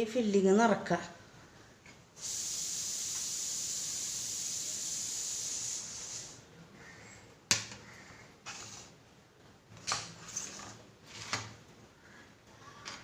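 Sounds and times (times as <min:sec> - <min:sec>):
steady high hiss: 0:01.9 - 0:06.7.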